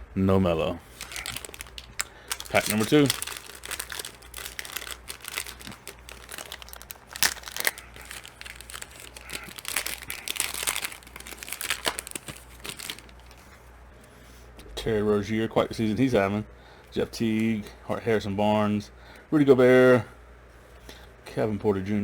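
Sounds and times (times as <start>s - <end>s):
plastic wrapper crinkling and tearing: 0.8s - 13.4s.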